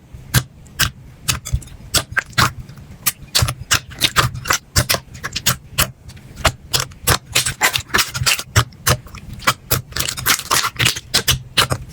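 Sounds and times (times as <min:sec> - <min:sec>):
slime crackling and popping: 0:00.8 - 0:11.9.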